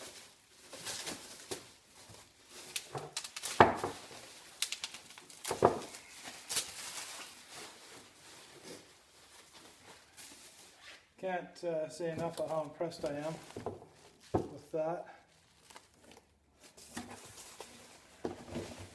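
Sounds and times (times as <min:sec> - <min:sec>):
packaging rustling: 0:00.0 - 0:10.9, 0:15.3 - 0:18.9.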